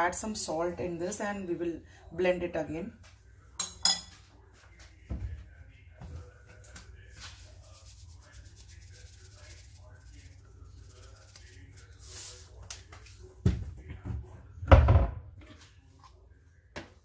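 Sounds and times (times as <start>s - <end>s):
kitchen items scraping and rubbing: 6.2s - 13.4s.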